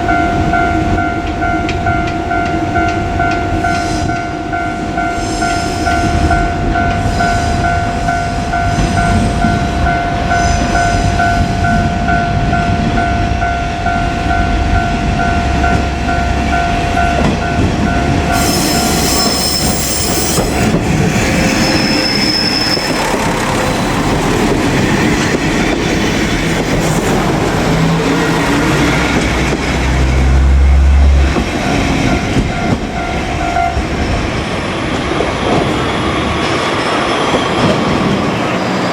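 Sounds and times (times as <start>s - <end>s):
level crossing bell ringing: 0.0s - 20.7s
diesel railcar engine rumbling: 0.0s - 38.9s
high squeal: 18.3s - 23.8s.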